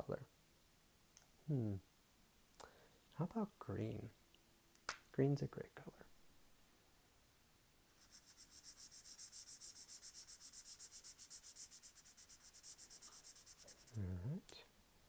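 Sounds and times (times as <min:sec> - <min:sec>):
marker scribbling on paper: 0:08.0 - 0:14.0.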